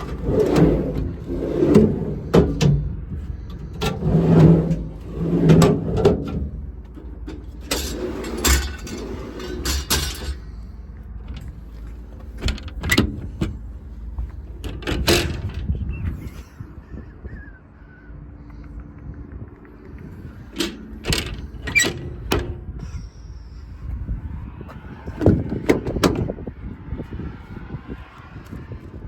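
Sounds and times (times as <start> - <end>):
metal doors and latches clunking: 0.0 - 15.9, 20.4 - 23.0, 25.1 - 26.4.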